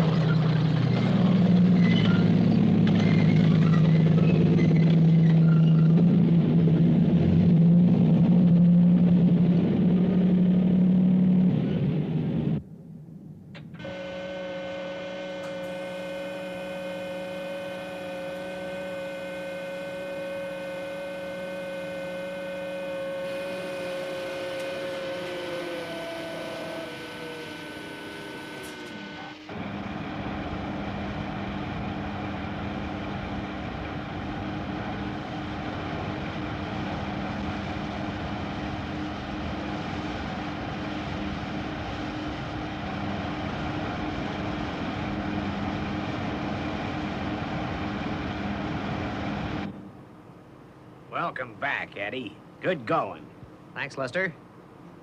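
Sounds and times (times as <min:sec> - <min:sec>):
rough low engine drone: 0:00.0 - 0:55.0
whining vehicle engine hum: 0:00.0 - 0:55.0.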